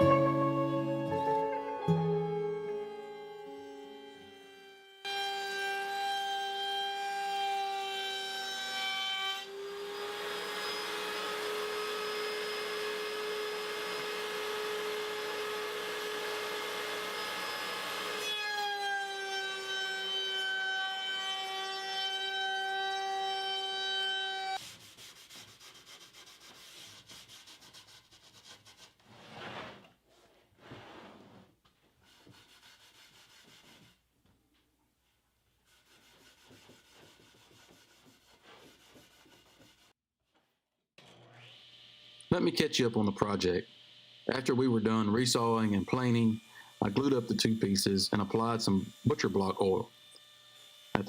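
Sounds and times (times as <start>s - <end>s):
woodworking machine motor whine: 9.4s - 19.6s, 41.0s - 42.3s, 48.8s - 49.3s.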